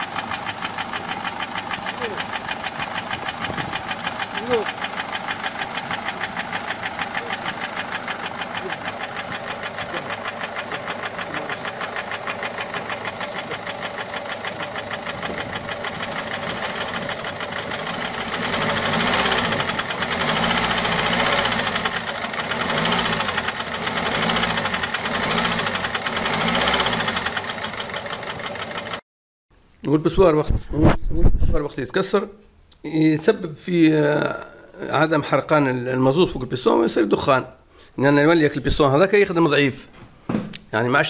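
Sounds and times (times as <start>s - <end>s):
diesel engine idling and revving: 0.0s - 29.0s
engine ticking clatter: 0.0s - 29.0s.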